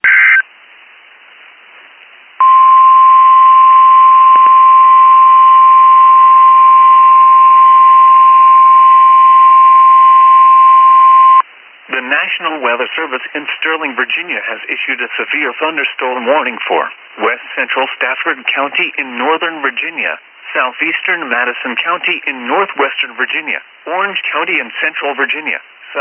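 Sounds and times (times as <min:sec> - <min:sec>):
steady alarm tone: 0:02.4 - 0:11.4.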